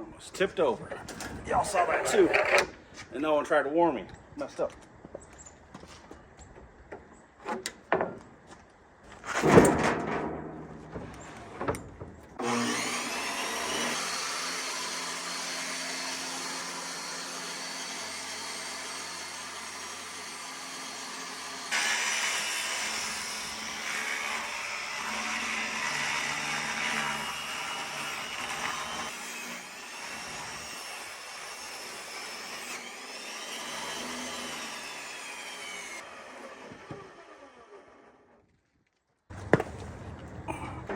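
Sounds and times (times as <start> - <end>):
power tool motor whine: 12.4 - 17.0, 35.5 - 38.4
loud thump: 39.4 - 40.0.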